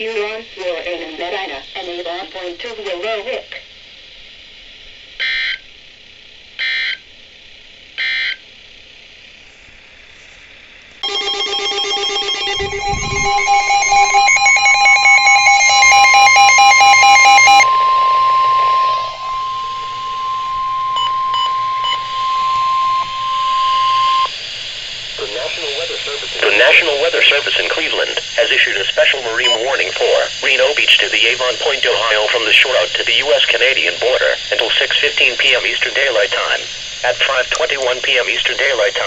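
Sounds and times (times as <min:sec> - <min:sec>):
fast-pulsing electronic alarm: 0:06.6 - 0:07.0, 0:08.0 - 0:08.4, 0:11.0 - 0:39.0
digital code bursts: 0:11.0 - 0:24.3
steady warning tone: 0:11.0 - 0:39.0.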